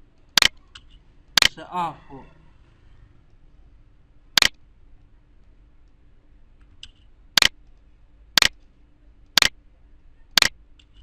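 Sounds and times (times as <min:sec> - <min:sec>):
computer mouse clicks: 0:00.3 - 0:01.5, 0:06.8 - 0:07.8, 0:09.3 - 0:09.5, 0:10.3 - 0:11.0.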